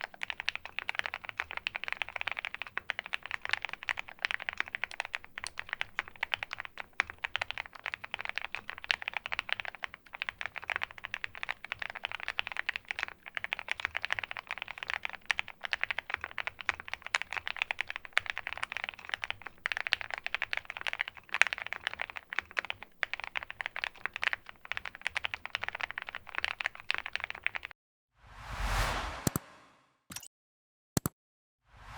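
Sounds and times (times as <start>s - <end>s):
mechanical keyboard typing: 0.0s - 27.7s
short whoosh: 28.2s - 29.8s.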